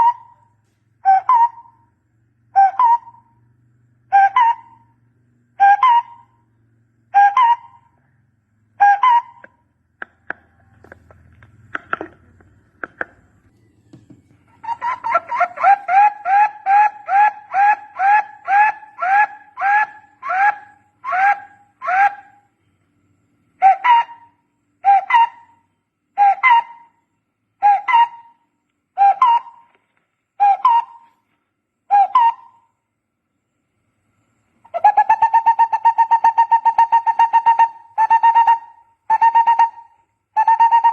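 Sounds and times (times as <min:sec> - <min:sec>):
barbet hollow hooting call: 0:00.0 - 0:01.8, 0:02.5 - 0:03.4, 0:04.1 - 0:04.9, 0:05.6 - 0:06.4, 0:07.1 - 0:07.9, 0:08.7 - 0:13.2, 0:14.0 - 0:22.5, 0:23.6 - 0:25.6, 0:26.2 - 0:27.0, 0:27.6 - 0:28.4, 0:29.0 - 0:29.8, 0:30.4 - 0:31.1, 0:31.9 - 0:32.7, 0:34.6 - 0:40.9.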